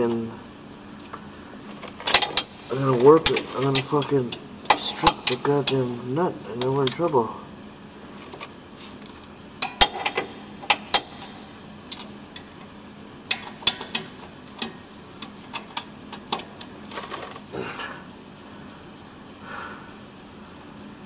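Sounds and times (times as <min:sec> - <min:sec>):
hand tools clicking on metal: 0:13.3 - 0:17.4.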